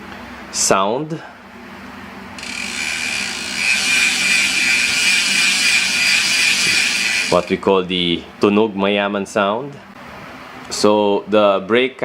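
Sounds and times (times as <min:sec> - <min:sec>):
bicycle hub ratcheting buzz: 0:02.4 - 0:07.6.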